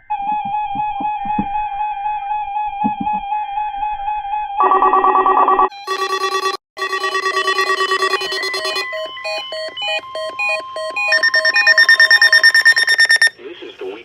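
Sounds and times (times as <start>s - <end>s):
harsh data tone bursts: 4.6s - 13.4s.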